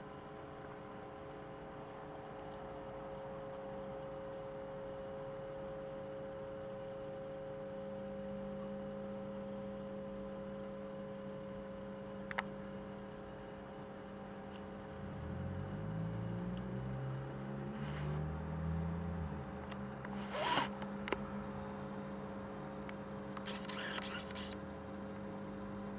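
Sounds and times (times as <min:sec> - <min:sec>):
click: 0:12.3 - 0:12.5, 0:19.7 - 0:21.2, 0:22.9 - 0:24.6.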